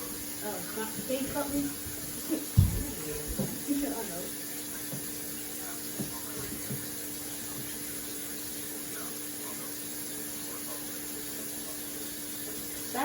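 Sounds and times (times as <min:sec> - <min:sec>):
tap running into sink: 0:02.4 - 0:03.9.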